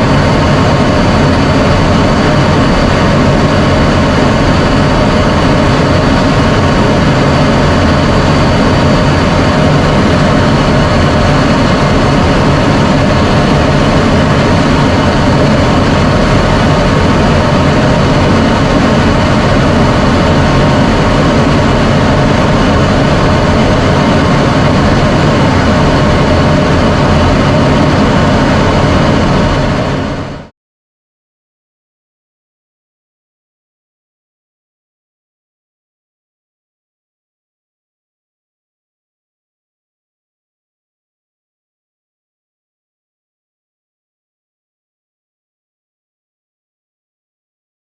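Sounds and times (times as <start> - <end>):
jet engine running: 0.0 - 30.5.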